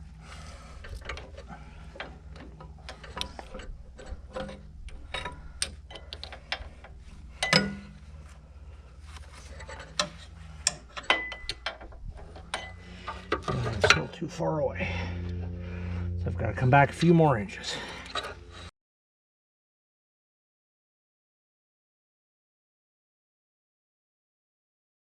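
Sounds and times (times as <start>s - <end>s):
low steady hum: 0.0s - 18.7s
metal couplers clicking and clinking: 0.8s - 8.4s, 9.4s - 14.2s
ringing metal clanks: 1.0s - 8.1s, 9.6s - 18.5s.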